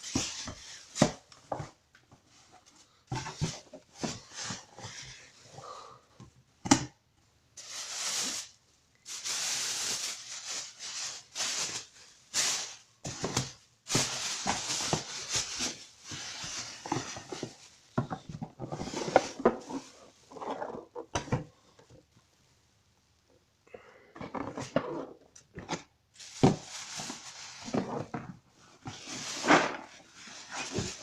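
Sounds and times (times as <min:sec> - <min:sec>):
packaging crinkling and rustling: 0:07.6 - 0:20.9, 0:26.2 - 0:31.0.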